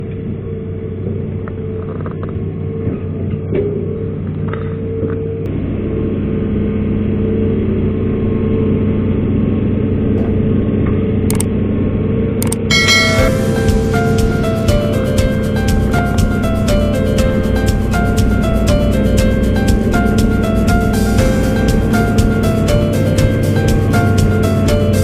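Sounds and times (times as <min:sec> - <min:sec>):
excavator diesel engine running: 0:00.0 - 0:25.0.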